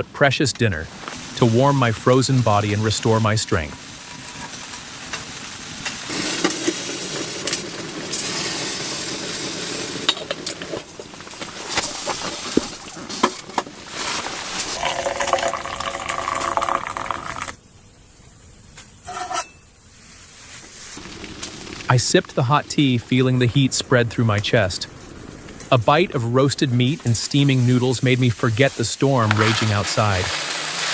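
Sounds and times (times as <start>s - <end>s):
water pouring into a vessel: 14.4s - 17.6s, 26.9s - 30.9s.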